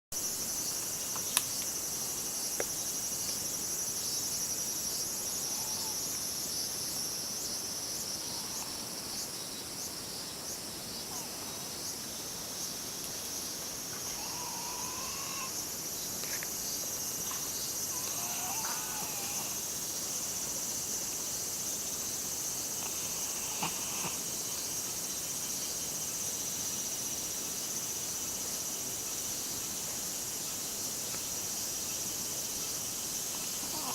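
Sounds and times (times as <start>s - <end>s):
insect chirps: 0.1s - 33.9s
insect chorus shrilling: 0.2s - 33.9s.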